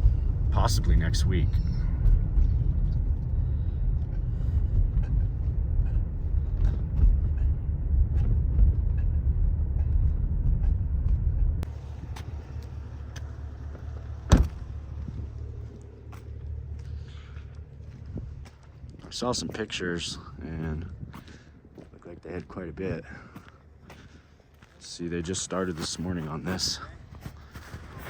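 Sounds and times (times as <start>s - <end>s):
motor vehicle rumble: 0.0s - 24.9s
sharp thump: 14.3s - 14.6s.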